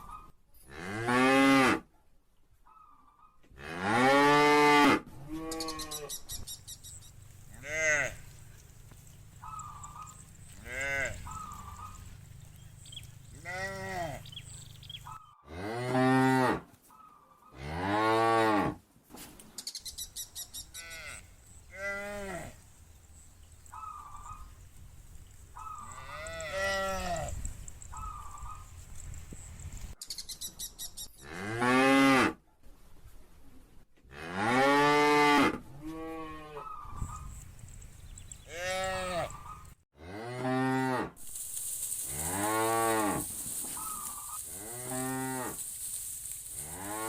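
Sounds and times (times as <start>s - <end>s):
cattle mooing: 7.5s - 8.4s, 9.4s - 16.6s, 38.5s - 41.1s.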